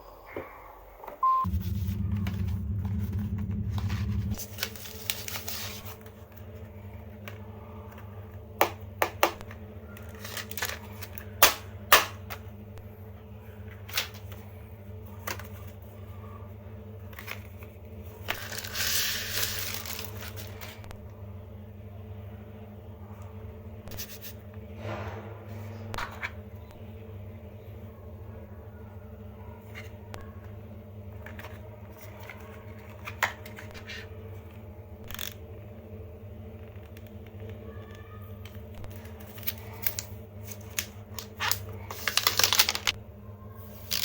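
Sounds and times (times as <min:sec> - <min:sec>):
steady low hum: 0:00.0 - 0:42.2
packaging rustling: 0:01.7 - 0:06.3, 0:10.0 - 0:11.3, 0:17.2 - 0:20.9, 0:38.9 - 0:43.0.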